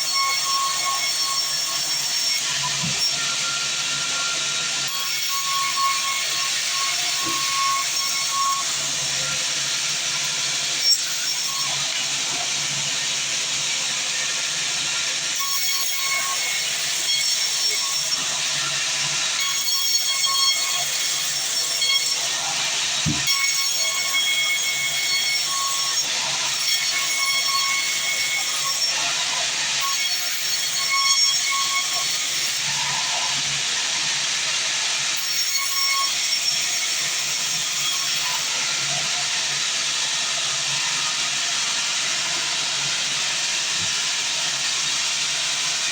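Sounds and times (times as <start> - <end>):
band saw cutting log: 0.0 - 12.9, 13.5 - 34.3.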